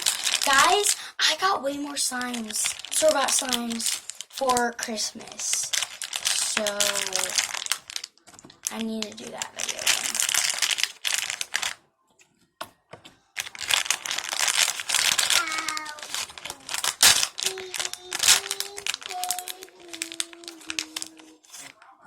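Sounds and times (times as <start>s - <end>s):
packaging crinkling: 0.0s - 1.1s, 1.7s - 11.8s, 13.4s - 21.8s.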